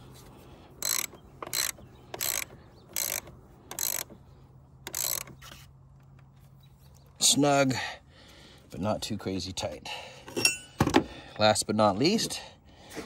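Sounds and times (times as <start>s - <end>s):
ratchet wrench clicking: 0.8s - 4.2s, 4.8s - 5.5s.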